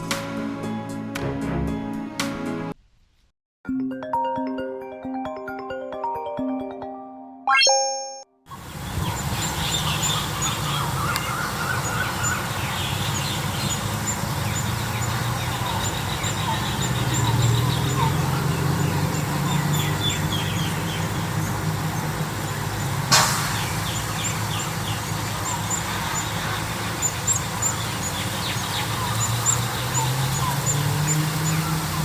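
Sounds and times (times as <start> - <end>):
small birds chirping: 8.5 - 32.0.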